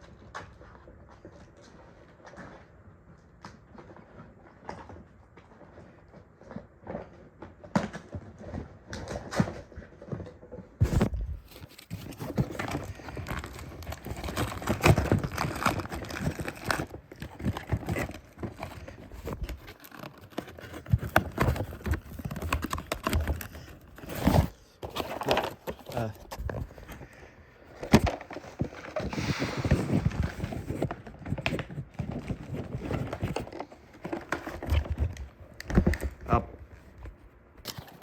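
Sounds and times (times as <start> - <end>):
packaging crinkling and tearing: 7.0 - 36.5.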